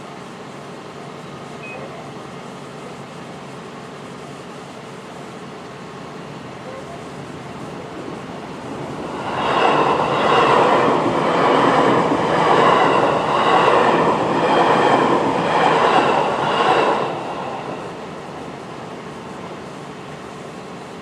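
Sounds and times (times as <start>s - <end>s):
train wheels rushing on rails: 2.5s - 21.0s.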